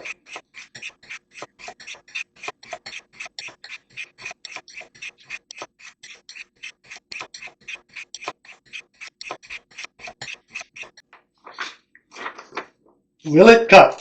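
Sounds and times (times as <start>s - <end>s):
knife rasping on sharpening rods: 0.0s - 11.1s.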